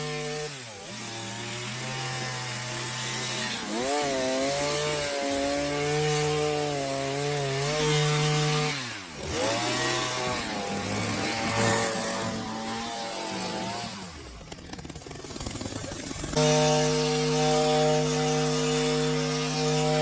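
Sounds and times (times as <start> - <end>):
hedge trimmer engine revving: 0.0 - 20.0.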